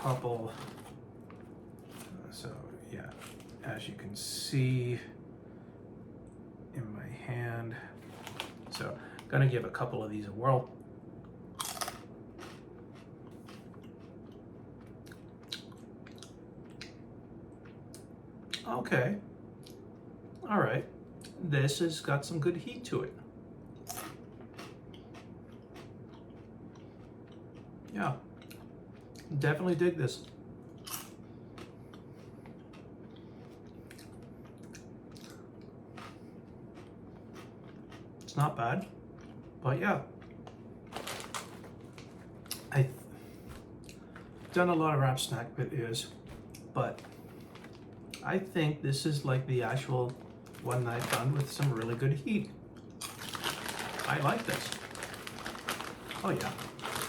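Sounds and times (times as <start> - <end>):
person crunching corn snacks: 0.0 - 2.2, 3.1 - 3.6, 8.0 - 9.3, 11.6 - 16.8, 23.8 - 27.4, 36.0 - 38.4, 40.2 - 42.8, 49.9 - 52.0, 52.8 - 57.0.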